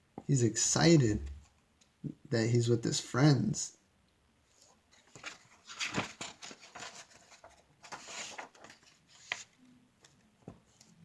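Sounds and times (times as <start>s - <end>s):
paper rustling: 4.5s - 11.0s.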